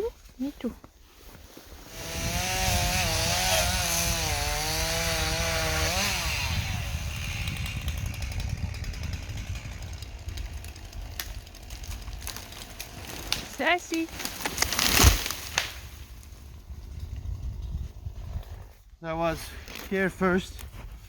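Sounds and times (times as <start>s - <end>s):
chainsaw running at high revs: 1.8s - 15.2s.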